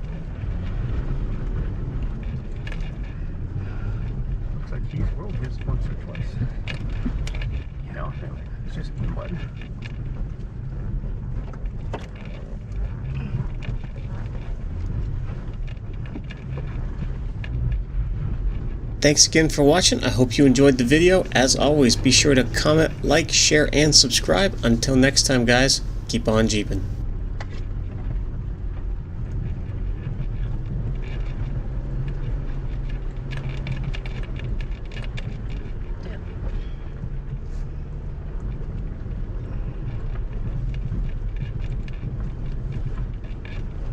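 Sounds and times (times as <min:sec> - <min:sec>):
wind on microphone: 0:00.0 - 0:26.1
off-road vehicle engine rumble: 0:00.0 - 0:43.9.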